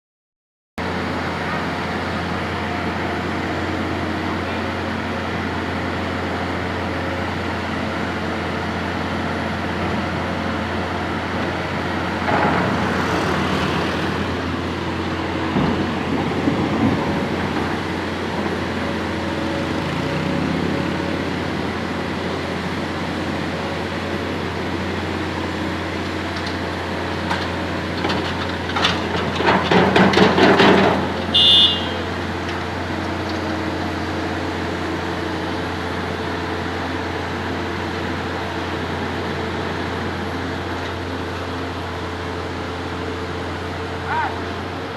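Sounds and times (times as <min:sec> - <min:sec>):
diesel engine running: 0:00.8 - 0:44.9
knocking and clattering: 0:27.3 - 0:31.2.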